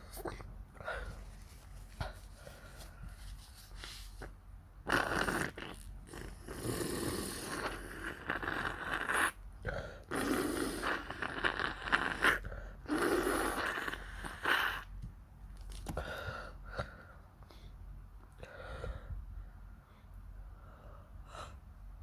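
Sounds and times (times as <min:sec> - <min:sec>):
person sniffling and snorting: 0:00.0 - 0:15.0.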